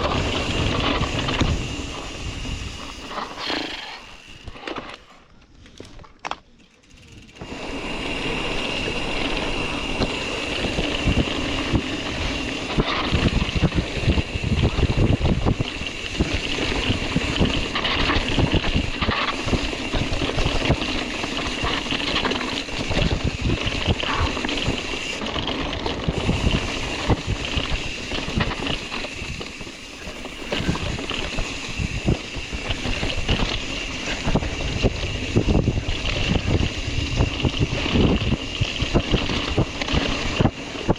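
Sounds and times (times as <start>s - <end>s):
wind rushing over microphone: 0.0s - 4.6s, 7.1s - 40.9s
bike rattling and knocking: 0.0s - 40.9s.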